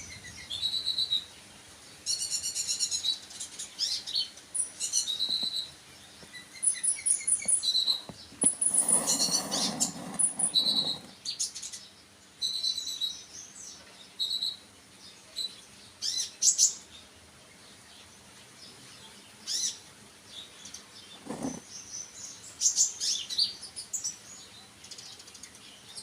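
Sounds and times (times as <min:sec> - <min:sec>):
songbird chirping and trilling: 0:00.0 - 0:26.0
rustling: 0:07.4 - 0:11.2, 0:21.2 - 0:21.6.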